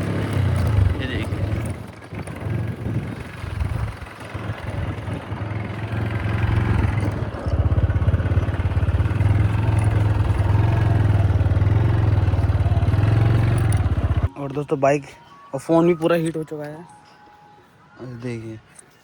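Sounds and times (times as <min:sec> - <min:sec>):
motorcycle engine running: 0:00.0 - 0:14.3.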